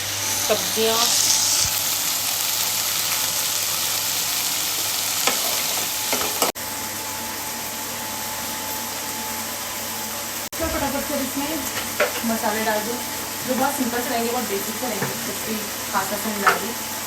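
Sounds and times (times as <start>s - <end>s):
kitchen exhaust fan: 0.0s - 17.0s
vegetables sizzling in oil: 0.0s - 17.0s.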